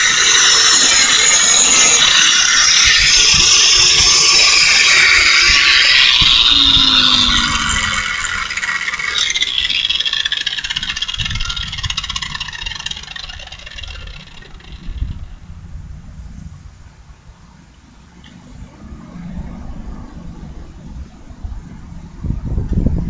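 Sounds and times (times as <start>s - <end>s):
angle grinder grinding: 0.0s - 15.6s.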